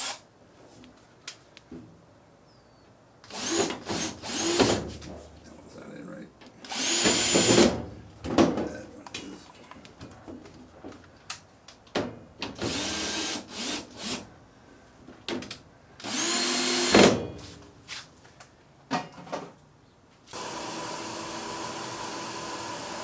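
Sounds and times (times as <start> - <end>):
cordless drill whining: 0.0 - 0.2, 3.3 - 4.7, 6.6 - 7.6, 12.7 - 14.2, 16.0 - 16.9, 20.3 - 23.0.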